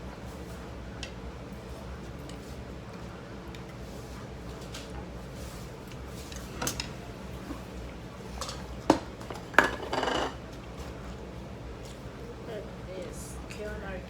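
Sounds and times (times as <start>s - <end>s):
utensils clinking on dishes: 6.2s - 7.7s, 8.3s - 10.5s.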